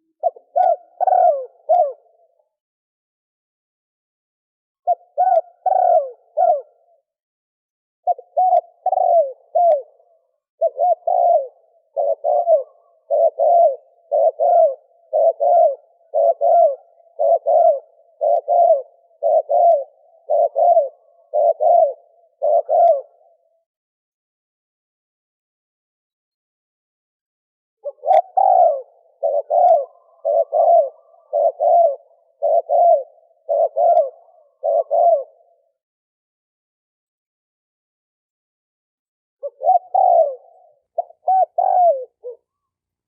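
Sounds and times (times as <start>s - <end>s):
dove cooing: 0.0s - 2.5s, 4.8s - 7.0s, 8.1s - 23.6s, 27.8s - 35.8s, 39.4s - 42.7s.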